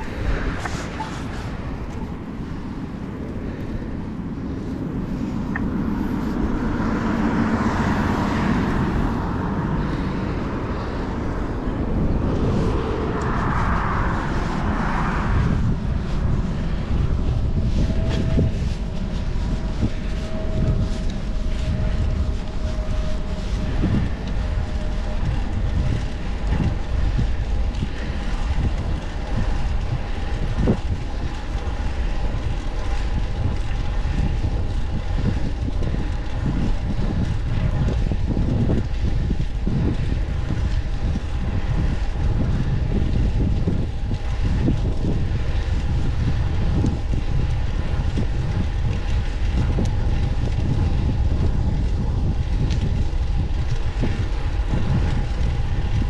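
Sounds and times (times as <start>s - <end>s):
road traffic passing: 0.0s - 33.0s
wind rumbling on microphone: 0.0s - 56.0s.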